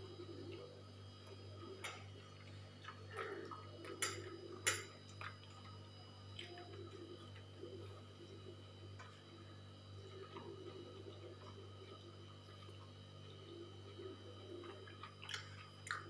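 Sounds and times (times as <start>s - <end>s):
steady low hum: 0.0s - 16.0s
person chewing with smacks: 0.5s - 8.2s, 10.1s - 13.0s, 14.6s - 16.0s.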